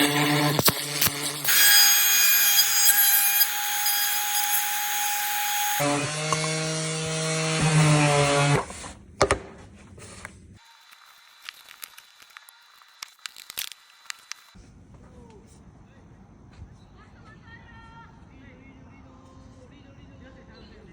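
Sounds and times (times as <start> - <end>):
power tool cutting wood: 0.0 - 8.7.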